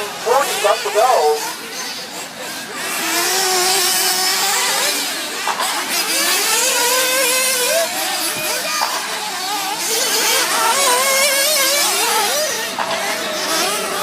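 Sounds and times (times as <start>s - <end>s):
rc car engines whining: 0.0s - 14.0s.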